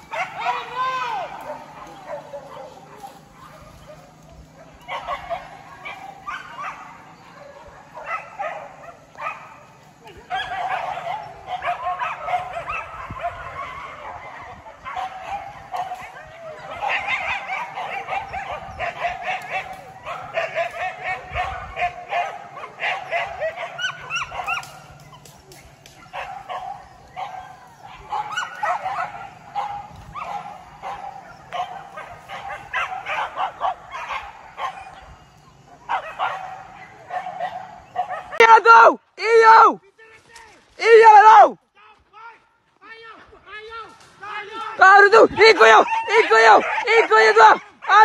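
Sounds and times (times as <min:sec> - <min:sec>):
dogs yelping and baying: 0:00.0 - 0:38.6, 0:45.2 - 0:48.0.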